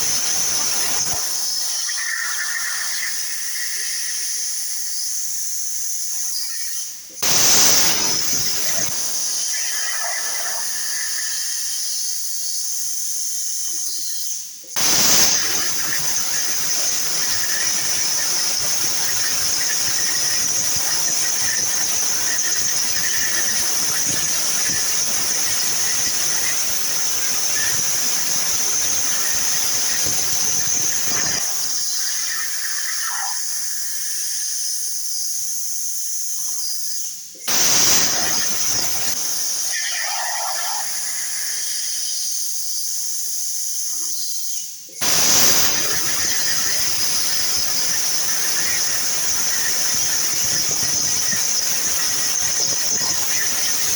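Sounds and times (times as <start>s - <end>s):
plasma cutter torch hissing: 0.0s - 1.9s, 7.2s - 9.9s, 14.8s - 32.6s, 37.5s - 39.8s, 45.0s - 53.9s.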